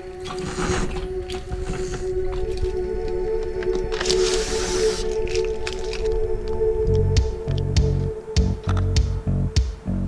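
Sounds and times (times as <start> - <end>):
electronic music with steady beat: 6.3 - 10.0.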